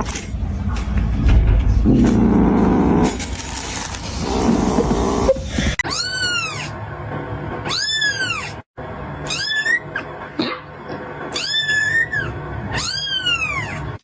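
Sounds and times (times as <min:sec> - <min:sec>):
kitten chirp: 0:05.8 - 0:06.7, 0:07.7 - 0:08.6, 0:09.3 - 0:10.0, 0:11.4 - 0:13.8
kitten meowing: 0:05.8 - 0:06.7, 0:07.7 - 0:08.6, 0:09.3 - 0:09.9, 0:11.4 - 0:13.8.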